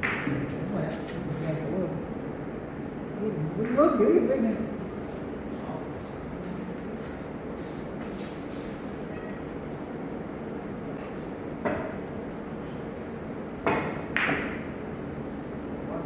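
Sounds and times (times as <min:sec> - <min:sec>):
steady background hiss: 0:00.0 - 0:16.0
thin high whine: 0:07.0 - 0:08.3, 0:09.0 - 0:12.6, 0:15.2 - 0:16.0
billiard cue and balls clacking: 0:13.6 - 0:14.7.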